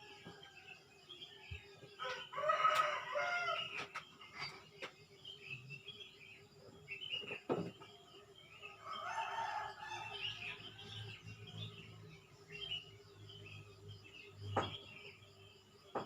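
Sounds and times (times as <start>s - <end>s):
small birds chirping: 0.0s - 16.0s
rooster crowing: 2.0s - 3.9s, 8.8s - 11.6s.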